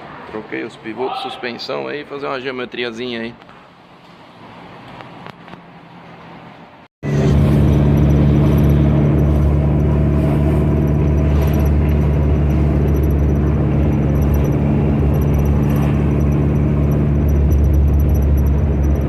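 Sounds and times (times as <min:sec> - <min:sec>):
car engine running: 0:07.0 - 0:19.0.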